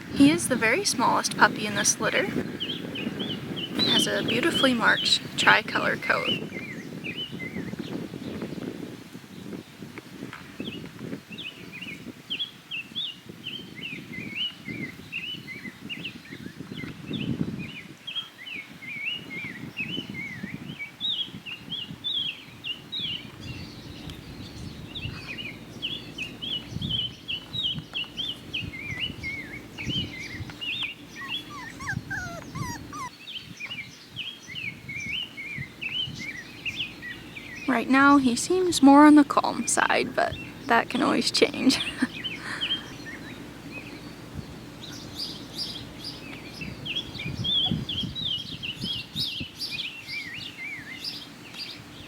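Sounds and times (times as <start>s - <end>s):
puppies whining: 28.2s - 33.2s.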